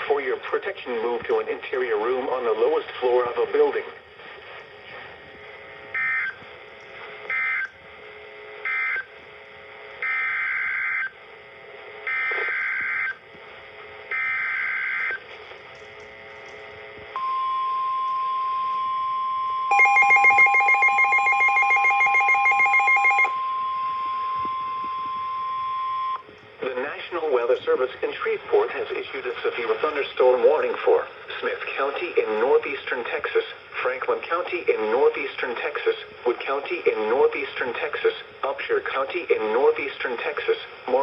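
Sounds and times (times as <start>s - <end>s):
rapid pulsing alarm beep: 6.0s - 6.4s, 14.1s - 15.2s, 17.2s - 26.3s
steady warning alert tone: 17.2s - 28.4s.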